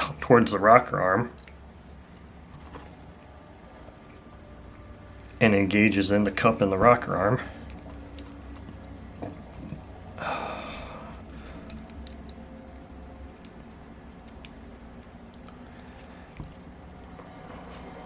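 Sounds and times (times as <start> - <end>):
small metal parts clicking: 11.5 - 16.2.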